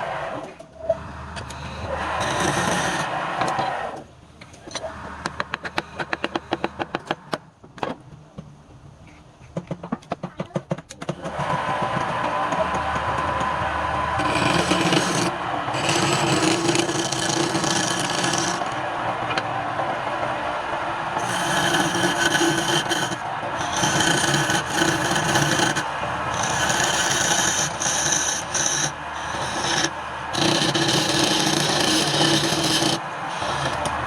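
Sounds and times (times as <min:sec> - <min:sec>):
lathe motor hum: 0:00.8 - 0:04.0, 0:04.6 - 0:07.2, 0:11.2 - 0:34.0
turning tool scraping spinning wood: 0:00.9 - 0:03.8, 0:11.1 - 0:34.0.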